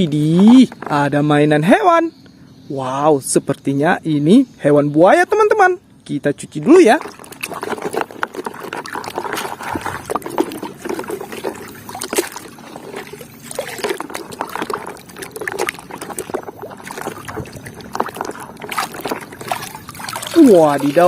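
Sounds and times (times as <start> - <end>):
water sloshing and trickling: 6.6 - 21.0
small splashes: 6.8 - 21.0.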